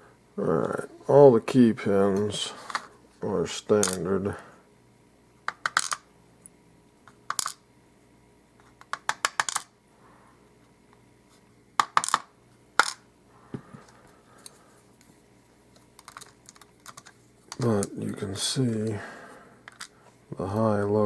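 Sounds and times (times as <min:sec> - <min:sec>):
small metal parts clattering: 0:16.0 - 0:17.8, 0:19.7 - 0:19.9.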